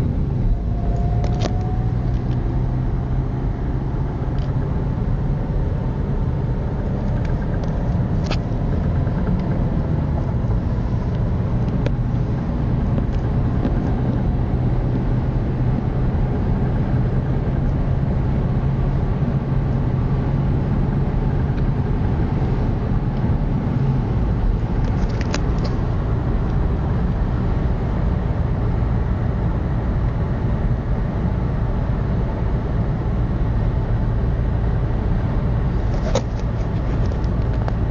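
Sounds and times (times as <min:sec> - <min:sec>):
car engine running: 0:00.0 - 0:37.9.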